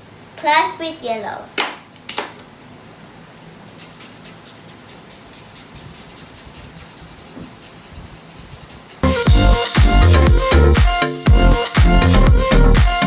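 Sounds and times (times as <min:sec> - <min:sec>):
colouring tool scratching on paper: 0:03.7 - 0:09.4.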